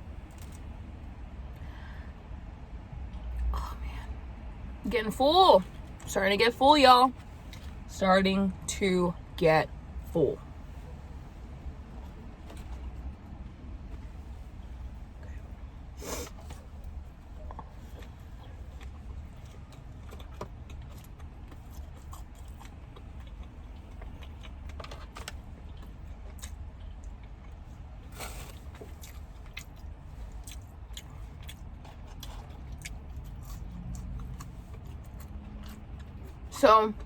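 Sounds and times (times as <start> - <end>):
low steady hum: 0.0 - 37.0
biting and chewing food: 16.3 - 37.0.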